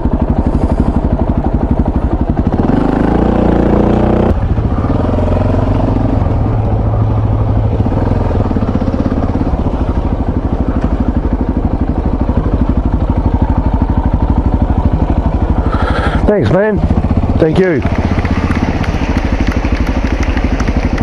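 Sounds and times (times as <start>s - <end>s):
motorcycle engine accelerating: 0.0s - 21.0s.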